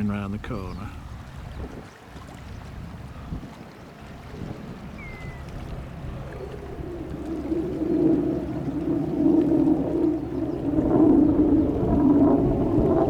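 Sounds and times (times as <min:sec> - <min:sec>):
boat engines rumbling: 0:00.0 - 0:13.0.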